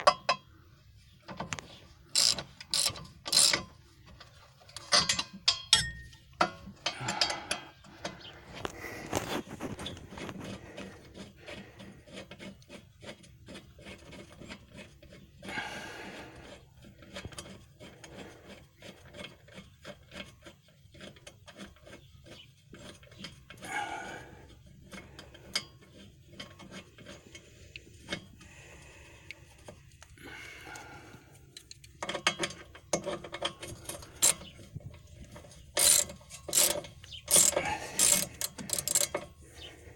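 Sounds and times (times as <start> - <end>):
ratchet wrench clicking: 2.1 - 3.6, 31.6 - 34.4, 35.7 - 39.3.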